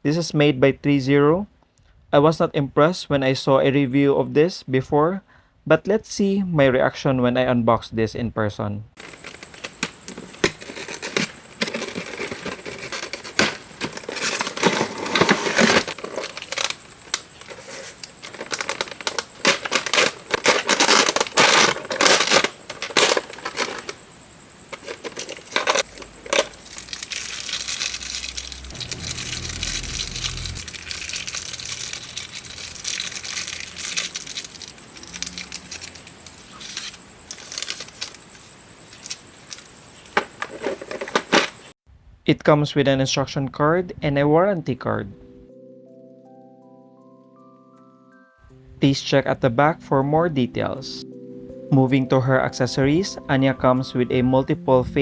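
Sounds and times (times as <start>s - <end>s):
packaging crinkling and tearing: 9.0s - 24.0s, 24.8s - 39.7s
packaging rustling: 9.0s - 24.0s, 24.7s - 41.7s.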